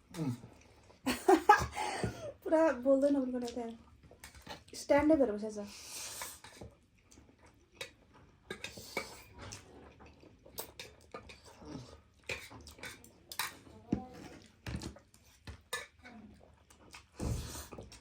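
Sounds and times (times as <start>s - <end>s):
chewing: 6.2s - 18.0s.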